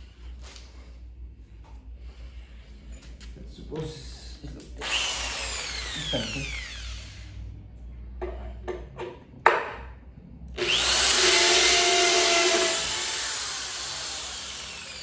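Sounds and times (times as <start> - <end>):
power drill boring into wood: 4.8 - 7.3, 10.6 - 15.0.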